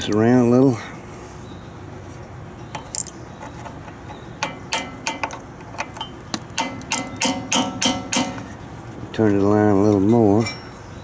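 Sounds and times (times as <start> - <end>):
sharp metal-on-metal taps: 2.7 - 8.6.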